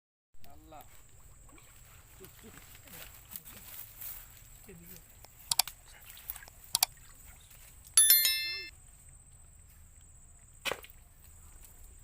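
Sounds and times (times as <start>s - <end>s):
metallic clang: 8.0s - 8.7s.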